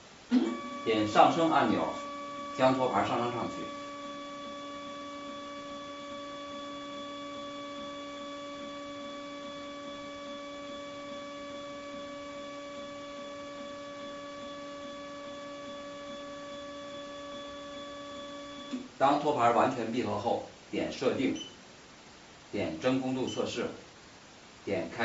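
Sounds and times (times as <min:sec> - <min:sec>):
furnace tray lift humming: 0:00.0 - 0:19.8.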